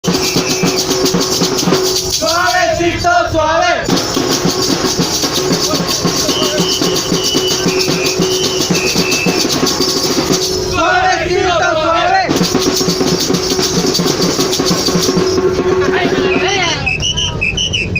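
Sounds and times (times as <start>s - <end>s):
short high-pitched held tones: 0.0s - 1.2s, 6.0s - 10.8s
percussion music with driving beat: 0.0s - 17.9s
shaker rhythm: 0.0s - 17.9s.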